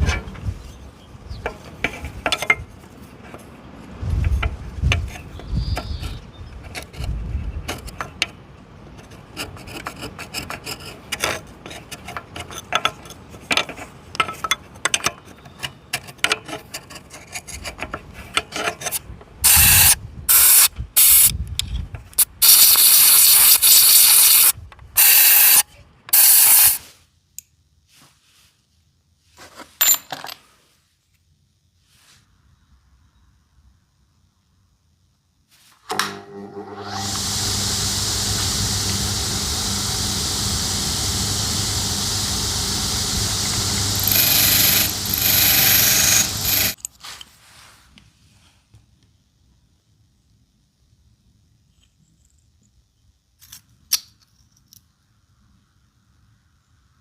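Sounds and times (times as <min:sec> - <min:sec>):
loud hissing blasts: 0:19.4 - 0:21.3, 0:22.2 - 0:25.6, 0:26.2 - 0:26.8, 0:37.0 - 0:46.8.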